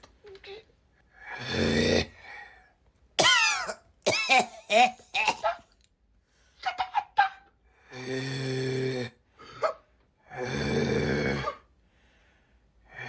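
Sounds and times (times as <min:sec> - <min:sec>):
person snoring and snorting: 0:01.2 - 0:02.3, 0:07.8 - 0:11.7.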